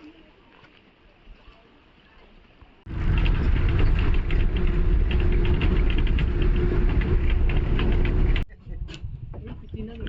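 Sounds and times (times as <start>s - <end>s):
engine low rumble: 2.9s - 8.8s
light rattles: 2.9s - 9.9s.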